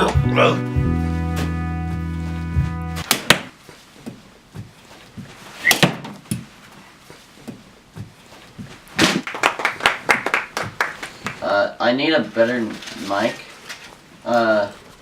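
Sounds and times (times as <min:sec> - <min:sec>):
thumps and knocks: 0:07.4 - 0:09.2.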